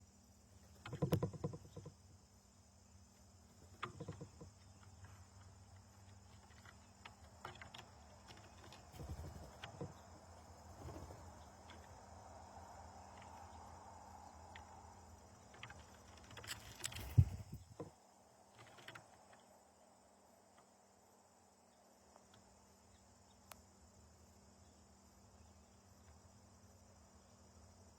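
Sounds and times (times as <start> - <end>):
insects droning: 0.0 - 27.9
low knocks and thumps: 16.9 - 17.9.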